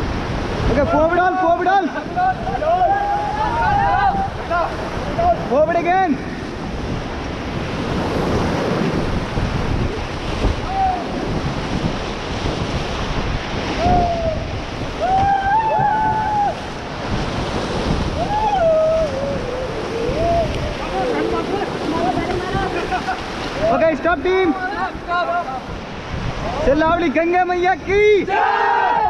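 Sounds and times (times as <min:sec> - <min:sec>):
rushing river water: 0:00.0 - 0:29.0
wind buffeting microphone: 0:00.0 - 0:29.0
people crying out: 0:18.2 - 0:21.6.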